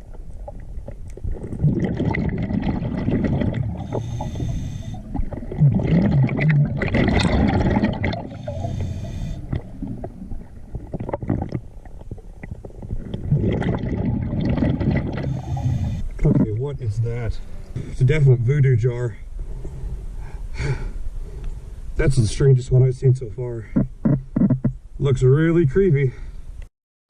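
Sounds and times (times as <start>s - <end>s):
exhaled bubbles rushing: 0.0s - 16.8s
underwater rumbling of breathing gear: 0.8s - 16.6s, 19.4s - 21.8s.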